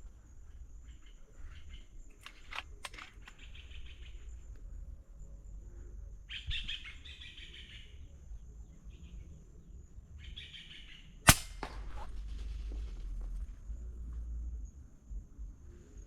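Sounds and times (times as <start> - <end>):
air rifle shot: 11.3 - 12.6.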